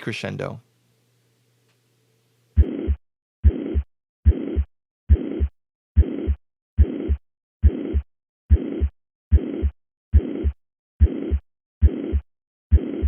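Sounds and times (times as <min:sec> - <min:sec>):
heartbeat thumps: 0:02.6 - 0:13.0
high-pitched heart murmur: 0:02.6 - 0:13.0.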